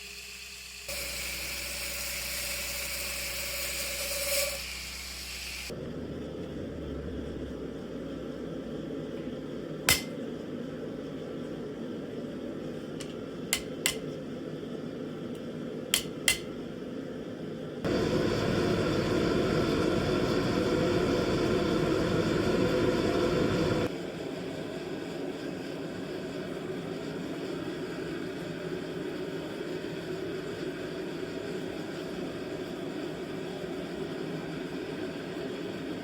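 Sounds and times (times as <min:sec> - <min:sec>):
workshop machine whirring: 0:00.0 - 0:08.6, 0:17.8 - 0:23.9.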